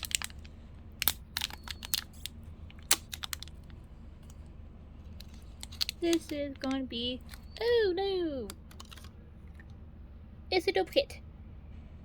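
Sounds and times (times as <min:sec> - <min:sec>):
packaging crinkling and tearing: 0:00.0 - 0:04.4, 0:05.1 - 0:07.6, 0:08.5 - 0:09.1.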